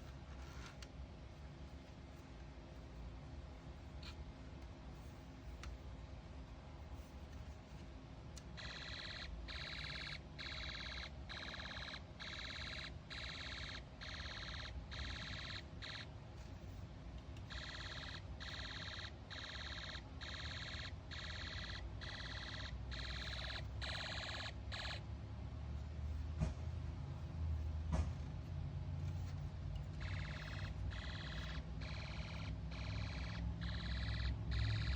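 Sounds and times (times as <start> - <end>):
electronic machine-gun effect: 8.6 - 16.1, 17.5 - 25.1, 30.0 - 34.9.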